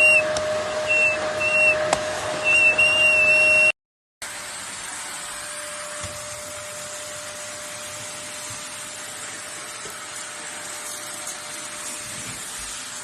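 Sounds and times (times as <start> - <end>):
vacuum cleaner running: 0.0 - 13.0.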